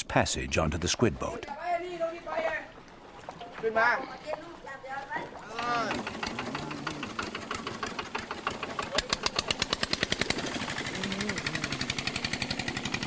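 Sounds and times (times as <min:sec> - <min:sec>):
boat engine chugging: 0:03.6 - 0:13.0.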